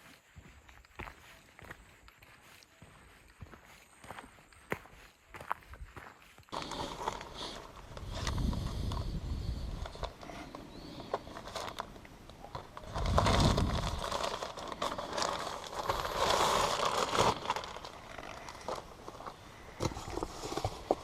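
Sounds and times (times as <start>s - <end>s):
rustling and crinkling handling: 6.5s - 21.0s.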